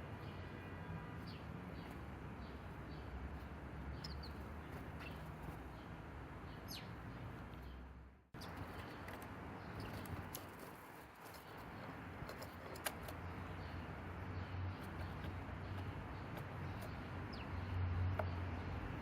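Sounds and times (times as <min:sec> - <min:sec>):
small birds chirping: 0:01.2 - 0:19.0.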